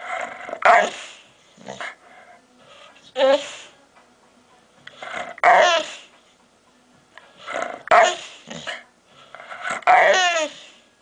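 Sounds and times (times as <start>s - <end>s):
dog making strange vocal noises: 5.0s - 6.0s, 9.4s - 10.6s.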